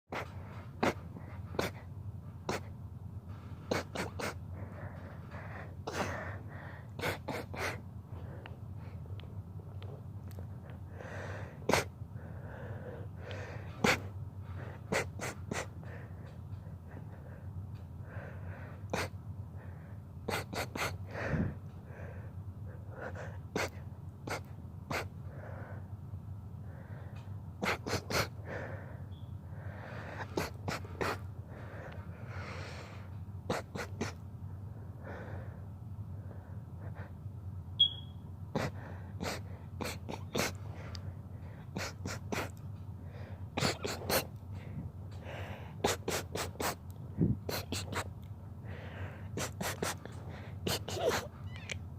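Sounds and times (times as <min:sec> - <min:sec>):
person sneezing: 0:03.7 - 0:04.4, 0:33.5 - 0:34.2, 0:41.8 - 0:42.5, 0:43.6 - 0:44.3, 0:45.8 - 0:46.8, 0:47.5 - 0:48.1, 0:49.4 - 0:50.0, 0:50.7 - 0:51.4
breathy inhales: 0:28.2 - 0:33.2, 0:38.6 - 0:46.6, 0:48.6 - 0:50.6.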